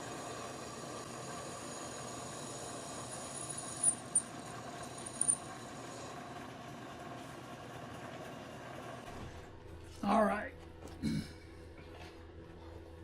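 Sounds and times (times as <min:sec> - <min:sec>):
metal lathe running: 0:00.0 - 0:09.0.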